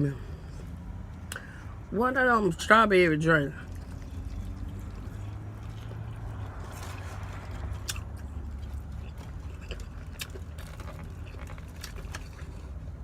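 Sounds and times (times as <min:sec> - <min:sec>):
low rumble inside a vehicle: 0:00.0 - 0:13.0
person chewing food: 0:03.6 - 0:13.0.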